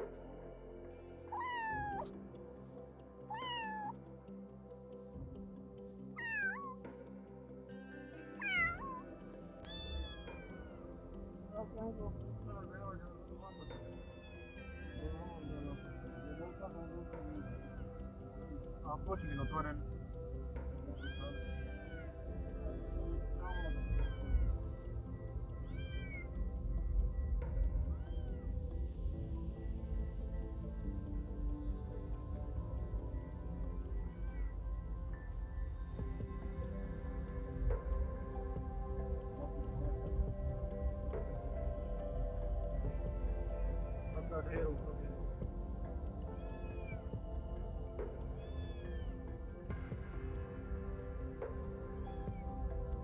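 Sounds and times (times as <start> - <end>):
cat meowing: 1.3 - 2.1, 3.3 - 4.0, 6.2 - 6.8, 8.4 - 9.0, 48.4 - 49.2.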